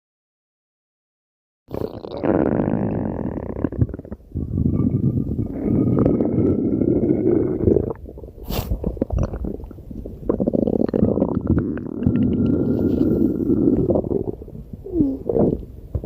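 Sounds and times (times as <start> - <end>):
stomach growling: 1.7 - 16.0
brief hiss: 8.4 - 8.8.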